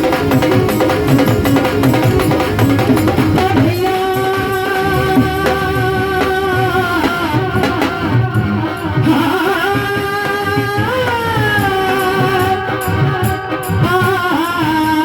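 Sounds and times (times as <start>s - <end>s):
steady drum beat: 0.0s - 15.0s
gliding melody line: 1.0s - 12.5s.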